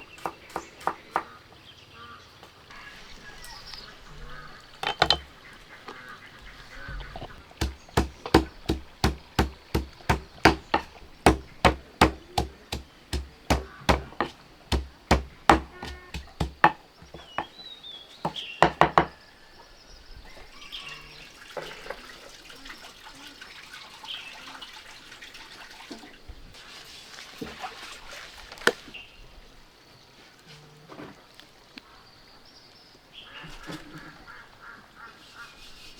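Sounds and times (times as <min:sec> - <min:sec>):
faint ducks calling: 0:00.4 - 0:08.0
sharp evenly spaced knocks: 0:07.6 - 0:17.5.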